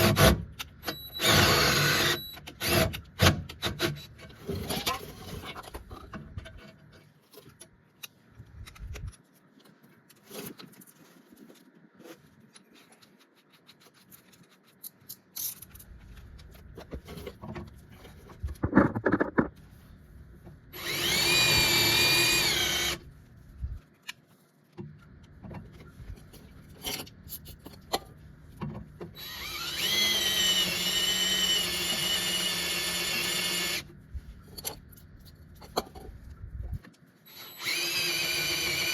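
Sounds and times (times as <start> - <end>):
power drill boring into steel: 1.2 - 2.9, 20.8 - 23.0, 29.2 - 33.8, 37.3 - 38.9.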